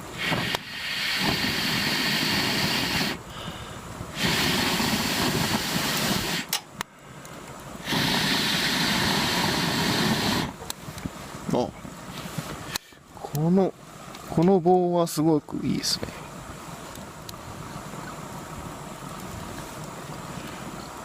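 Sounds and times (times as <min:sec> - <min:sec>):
blowing through a pipe into fire: 0:00.0 - 0:06.6, 0:07.8 - 0:11.4.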